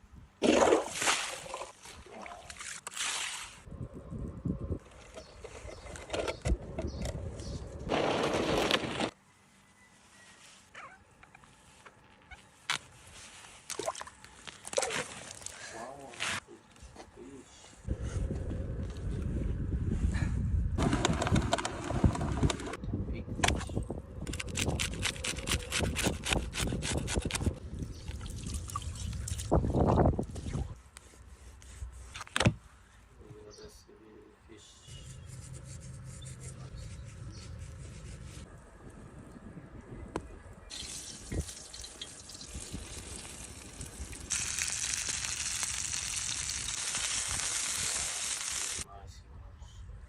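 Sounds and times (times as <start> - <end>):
water splashing and trickling: 0.4 - 3.7, 13.5 - 15.8, 27.7 - 30.8, 40.7 - 48.9
rushing hissing water: 44.3 - 48.8.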